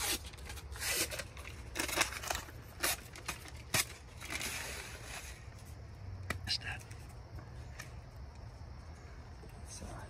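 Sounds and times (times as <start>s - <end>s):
cardboard packaging tearing: 0.0s - 5.4s.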